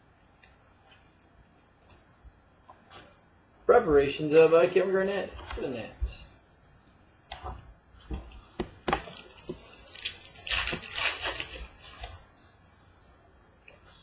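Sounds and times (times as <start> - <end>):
paper and foil rustling: 9.1 - 12.5.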